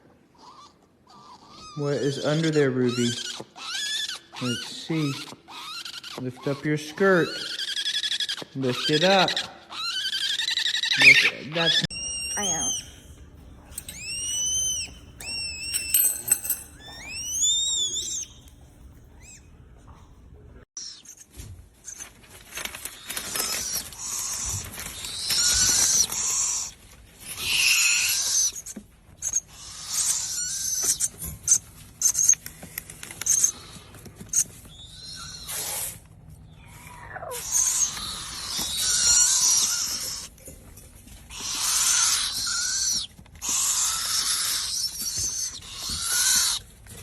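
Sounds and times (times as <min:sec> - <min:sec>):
owl squeaks and chirps: 0:00.4 - 0:16.2, 0:16.8 - 0:18.6, 0:19.2 - 0:19.5, 0:23.3 - 0:32.4, 0:33.2 - 0:40.3, 0:41.2 - 0:46.7
falling squeal: 0:13.6 - 0:18.5.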